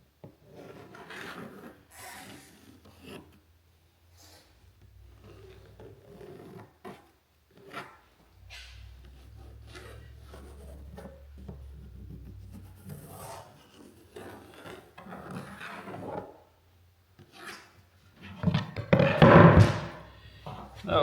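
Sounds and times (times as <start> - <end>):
pencil scratching on wood: 0.4 - 3.4, 4.8 - 16.3.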